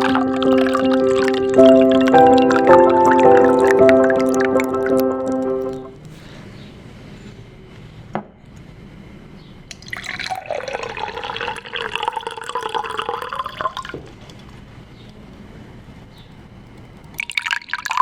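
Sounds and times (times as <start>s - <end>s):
water poured into a glass: 0.0s - 5.1s, 9.7s - 14.0s, 17.2s - 18.0s.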